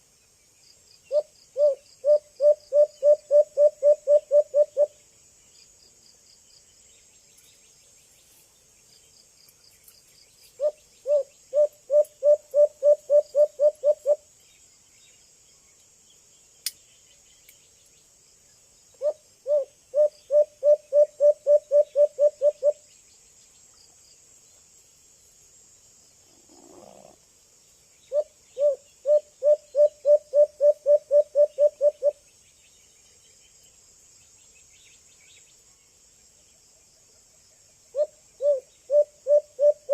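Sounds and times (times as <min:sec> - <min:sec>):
high insect drone: 0:00.0 - 0:39.9
dove hooting: 0:01.1 - 0:05.0, 0:10.6 - 0:14.2, 0:19.0 - 0:22.8, 0:28.1 - 0:32.2, 0:38.0 - 0:39.9.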